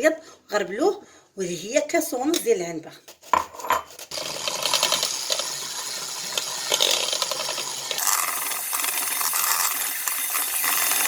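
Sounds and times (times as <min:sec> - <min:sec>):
whisk rattling in a bowl: 0:04.1 - 0:11.0.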